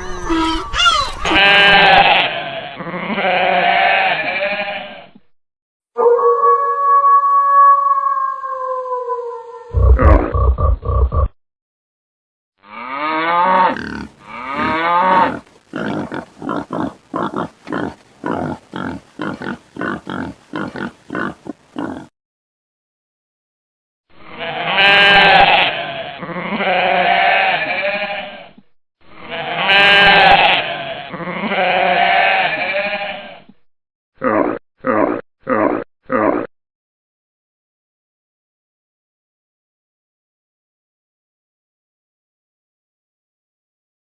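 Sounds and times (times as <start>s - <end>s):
long wavering animal call: 6.0s - 9.8s.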